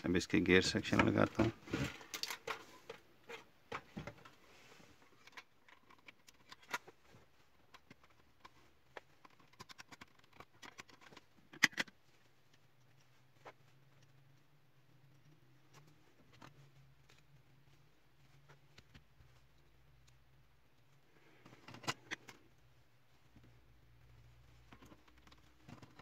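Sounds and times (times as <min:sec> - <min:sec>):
plastic printer parts clicking: 0:00.9 - 0:03.0, 0:09.2 - 0:12.0.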